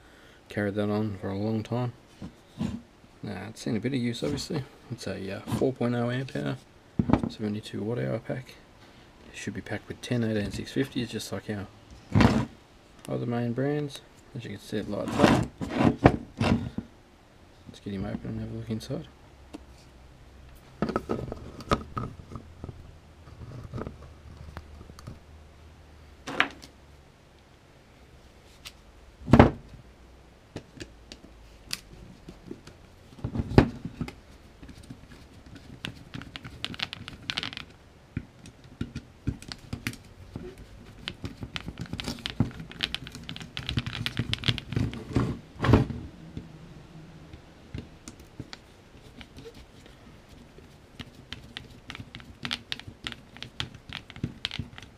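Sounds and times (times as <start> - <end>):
small clicks scrapes and rustles: 19.6 - 25.2, 31.6 - 37.8, 39.3 - 45.4, 48.1 - 54.9.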